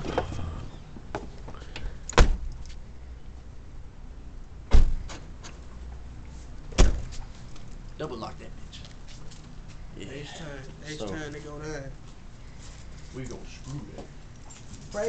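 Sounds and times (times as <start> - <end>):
car doors slamming: 0.0 - 0.6, 2.1 - 2.6, 4.7 - 5.3, 6.7 - 7.2
low steady rumble: 0.0 - 15.0.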